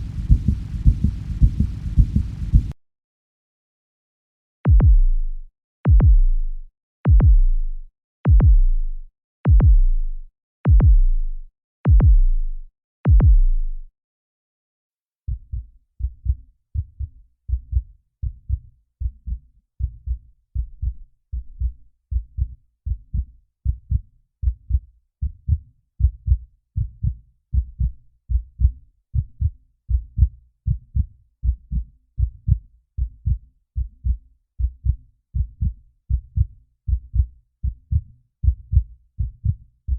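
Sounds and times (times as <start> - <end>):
deep heartbeat thuds: 0.0 - 2.8, 4.7 - 5.3, 5.9 - 6.5, 7.1 - 7.7, 8.3 - 8.9, 9.5 - 10.1, 10.7 - 13.8, 20.6 - 39.9
fast lub-dub heartbeat: 0.0 - 2.8, 4.7 - 5.2, 5.9 - 6.4, 7.1 - 7.6, 8.3 - 8.8, 9.5 - 10.0, 10.7 - 11.2, 11.9 - 12.4, 13.1 - 13.7, 15.5 - 39.9.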